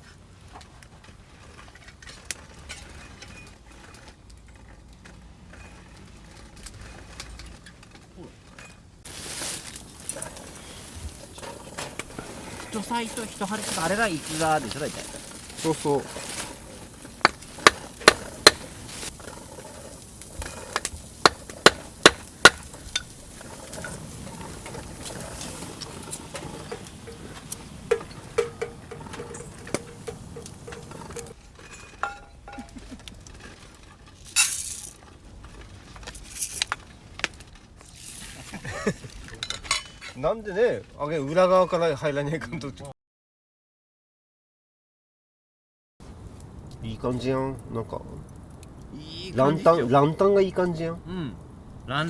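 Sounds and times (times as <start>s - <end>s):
campfire crackling: 0.0s - 42.9s, 46.0s - 52.0s
sharp knocks: 17.1s - 18.8s, 20.7s - 23.1s, 26.6s - 31.4s.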